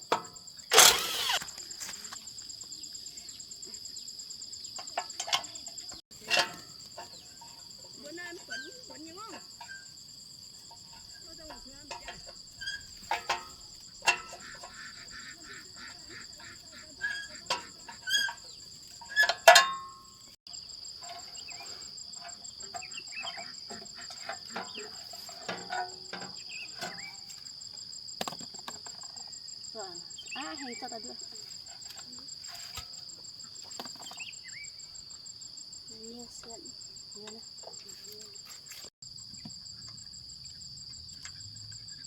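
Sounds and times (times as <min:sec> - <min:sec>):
insects chirping: 0:00.0 - 0:42.0
metallic clinks and knocks: 0:10.6 - 0:14.8, 0:17.1 - 0:20.2.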